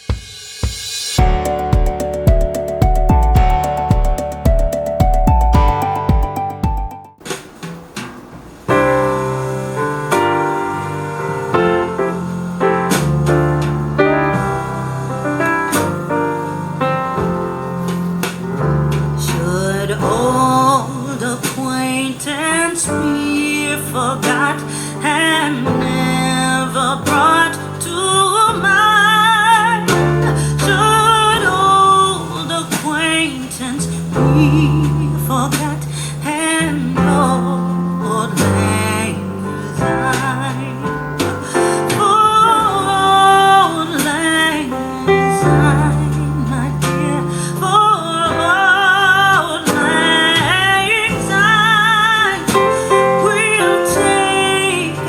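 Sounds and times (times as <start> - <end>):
woman singing: 19.1 - 55.0.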